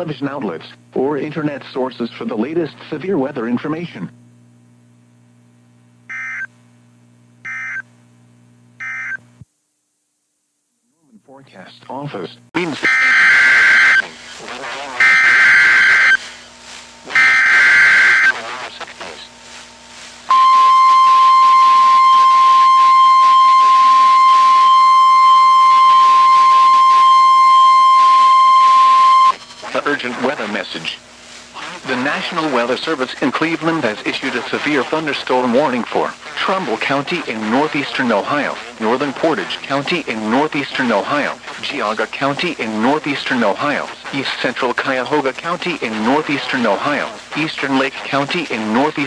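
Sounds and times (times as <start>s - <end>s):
faint radio hiss: 0.0s - 49.0s
steady low hum: 0.0s - 49.0s
loud steady alarm tone: 6.1s - 6.5s, 7.4s - 7.8s, 12.6s - 18.4s, 20.3s - 30.6s
digital data bursts: 7.4s - 7.8s, 12.6s - 16.3s, 17.1s - 19.2s, 20.3s - 31.0s.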